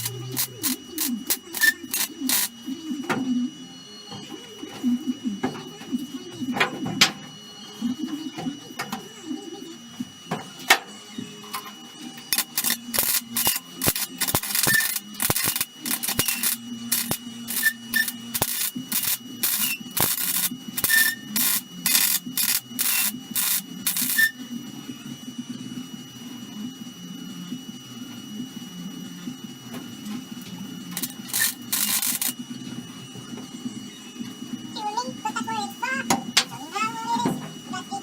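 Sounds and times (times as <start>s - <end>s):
welding bursts crackling hiss: 0.0s - 2.6s, 11.6s - 24.3s, 30.9s - 32.4s.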